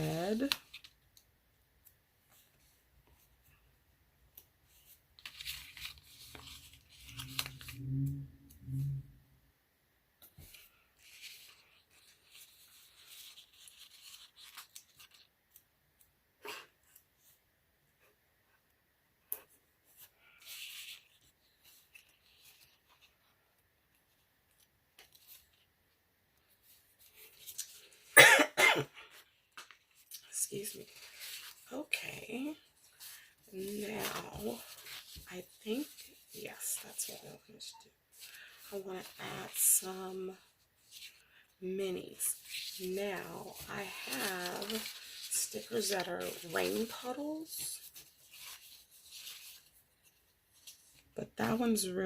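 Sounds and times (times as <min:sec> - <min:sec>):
paper rustling: 0:00.0 - 0:01.1, 0:04.6 - 0:08.1, 0:10.3 - 0:15.7, 0:19.4 - 0:25.7, 0:26.4 - 0:28.2, 0:29.1 - 0:51.8
person sneezing: 0:28.2 - 0:29.0.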